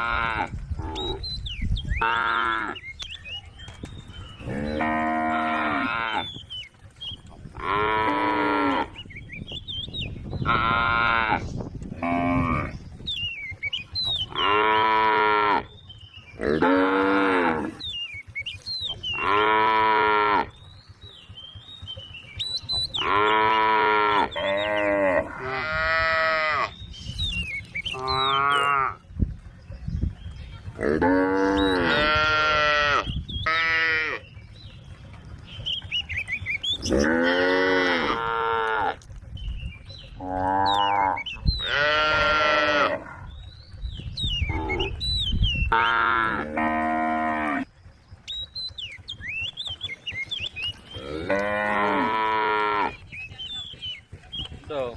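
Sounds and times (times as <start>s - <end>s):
cows mooing: 0.0s - 1.4s, 2.0s - 2.8s, 4.3s - 6.5s, 7.4s - 9.1s, 10.4s - 12.9s, 13.8s - 20.7s, 22.7s - 26.9s, 27.7s - 29.1s, 30.7s - 34.4s, 36.4s - 39.1s, 40.0s - 43.4s, 44.4s - 45.0s, 45.6s - 47.7s, 49.7s - 53.1s.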